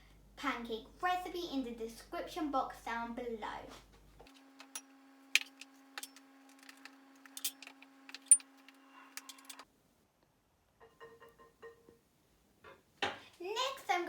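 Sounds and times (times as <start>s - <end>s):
utensils clinking against bowl: 7.3s - 9.6s.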